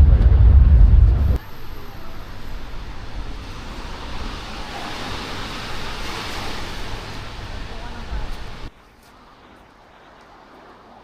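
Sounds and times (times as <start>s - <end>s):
road traffic rumble and hiss: 1.3s - 8.7s.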